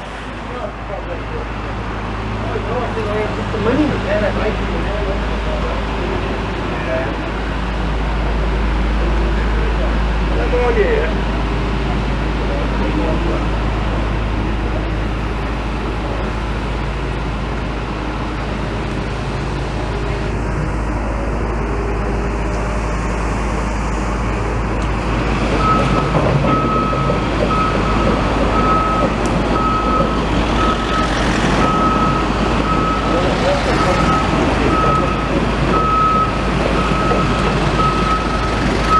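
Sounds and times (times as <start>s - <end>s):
street traffic noise: 0.0s - 38.9s
high electronic warning beep: 25.6s - 38.9s.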